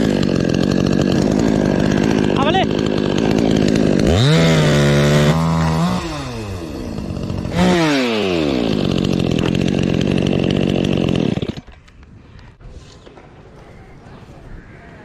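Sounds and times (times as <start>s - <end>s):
chainsaw engine revving: 0.0s - 11.8s
chainsaw idling: 0.0s - 11.8s.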